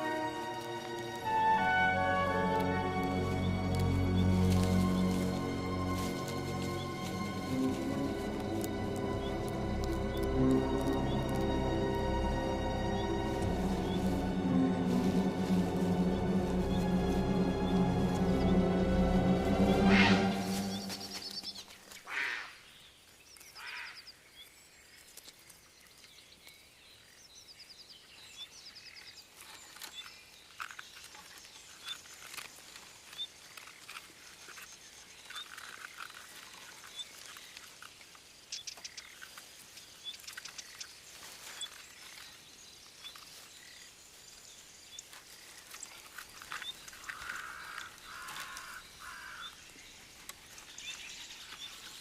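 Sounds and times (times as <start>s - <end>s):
small birds chirping: 19.7s - 52.0s.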